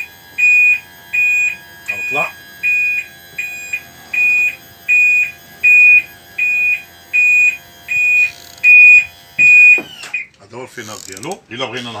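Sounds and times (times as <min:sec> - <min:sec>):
electronic warning beeper: 0:00.0 - 0:10.3
steady motor whine: 0:00.0 - 0:10.3.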